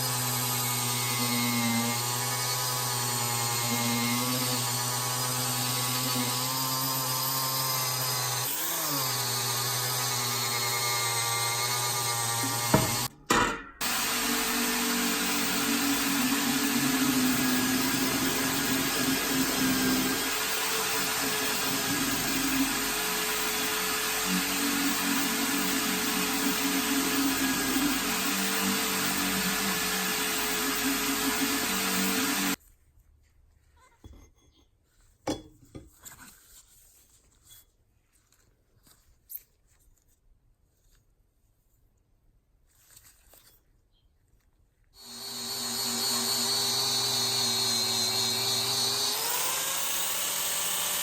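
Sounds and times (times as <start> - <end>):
electric power tool running: 0.0 - 13.1, 13.8 - 32.6, 45.0 - 51.0
knocks and clicks on workbench: 12.7 - 13.8.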